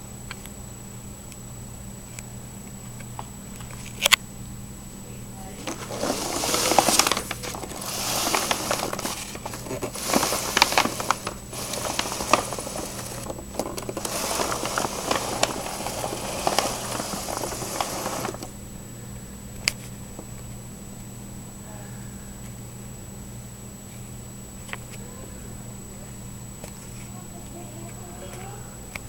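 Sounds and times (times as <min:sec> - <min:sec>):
low electrical hum: 0:00.0 - 0:29.0
rustling and crinkling: 0:05.6 - 0:18.5.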